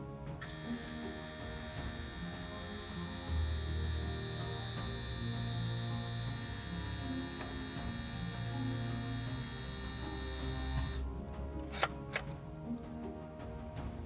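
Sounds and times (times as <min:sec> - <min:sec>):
quiet background music: 0:00.0 - 0:14.0
electrical hum and hiss: 0:00.4 - 0:11.1.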